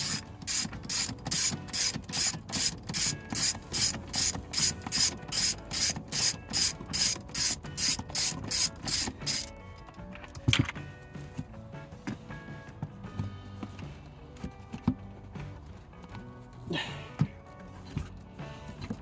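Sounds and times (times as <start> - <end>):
hand ratchet clicking: 0.0 - 9.5.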